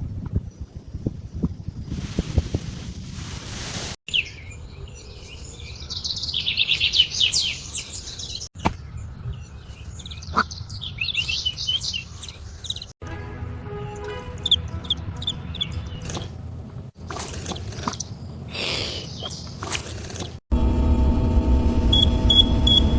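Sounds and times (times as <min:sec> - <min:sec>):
birds chirping: 0:04.1 - 0:13.0, 0:13.8 - 0:20.4.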